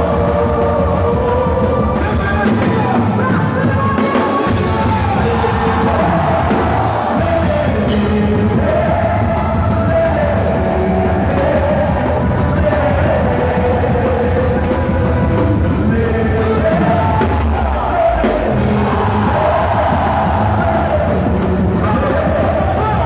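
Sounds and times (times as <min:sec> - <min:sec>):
loud music with steady beat: 0:00.0 - 0:23.0
person singing: 0:00.0 - 0:23.0.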